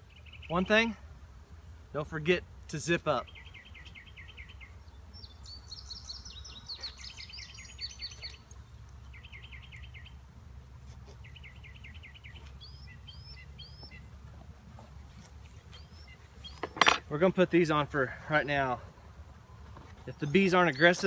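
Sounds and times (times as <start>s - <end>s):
birds singing: 0.0s - 21.0s.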